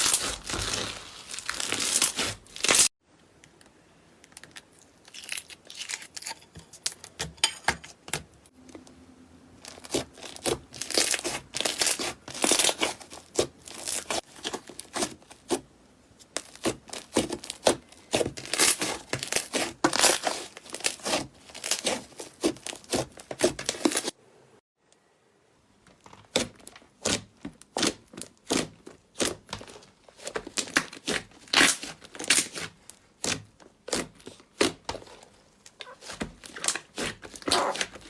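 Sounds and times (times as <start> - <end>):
slime crackling and popping: 9.6 - 15.6, 16.2 - 24.1, 26.3 - 38.0.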